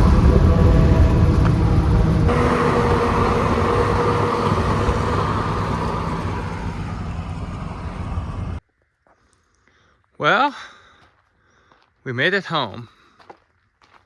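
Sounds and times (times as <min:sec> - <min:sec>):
truck engine and road noise: 0:00.0 - 0:08.6.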